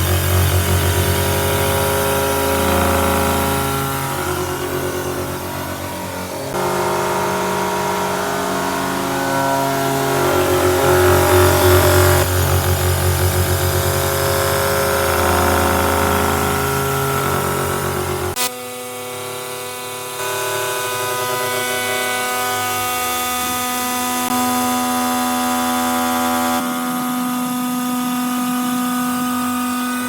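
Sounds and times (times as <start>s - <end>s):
milling spindle whine: 0.0s - 18.4s.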